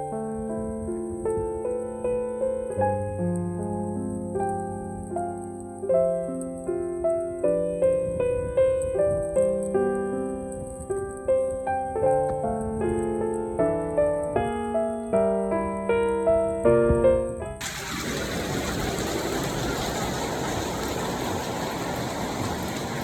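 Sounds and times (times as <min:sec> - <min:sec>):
soft piano music: 0:00.0 - 0:17.6.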